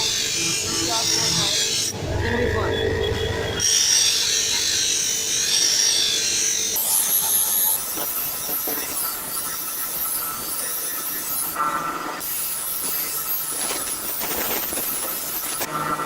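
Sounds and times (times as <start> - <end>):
tool grinding steel blade: 3.6 - 11.6, 12.2 - 16.0.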